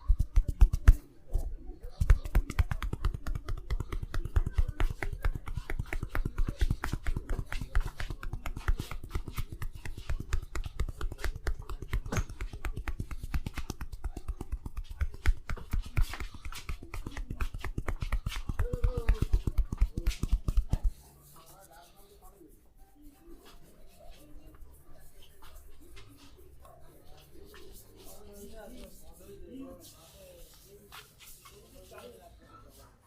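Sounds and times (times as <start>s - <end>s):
rapid massage hand slaps: 0.0s - 1.0s, 1.8s - 21.5s.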